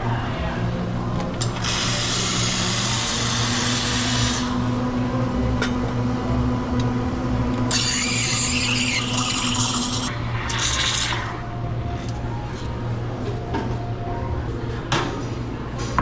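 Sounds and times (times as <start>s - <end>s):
espresso machine pump hum: 1.5s - 11.3s.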